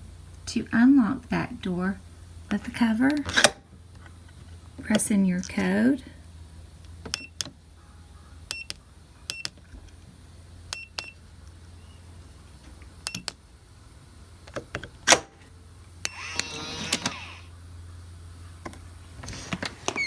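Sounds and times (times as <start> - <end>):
lock motor whirring: 3.0 - 3.7, 14.4 - 15.4, 16.0 - 17.6.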